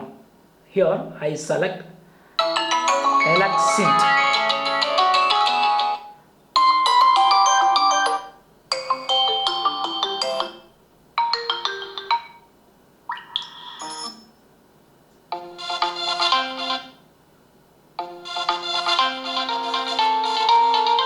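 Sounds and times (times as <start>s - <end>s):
phone ringtone melodies: 2.4s - 12.5s, 13.2s - 14.3s, 15.4s - 16.9s, 18.0s - 21.0s.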